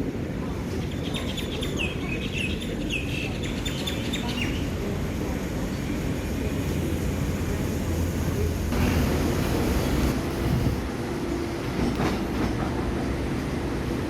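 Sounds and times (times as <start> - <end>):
small birds chirping: 0.8 - 4.8.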